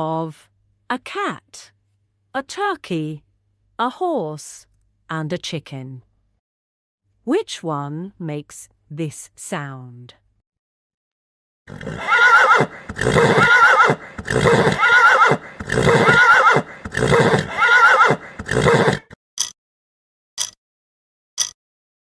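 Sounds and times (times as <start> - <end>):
horse neighing: 11.7 - 19.2
short clicks: 20.4 - 20.6.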